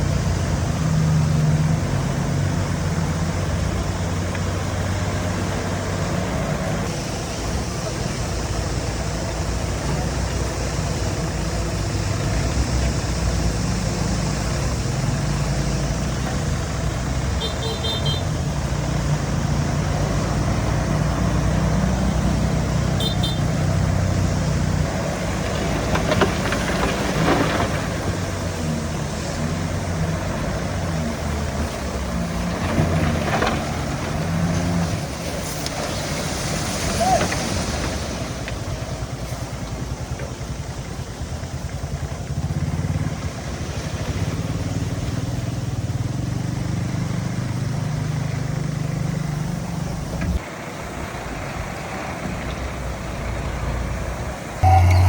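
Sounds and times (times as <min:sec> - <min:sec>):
bulldozer diesel engine running: 0:00.0 - 0:35.9, 0:51.0 - 0:55.0.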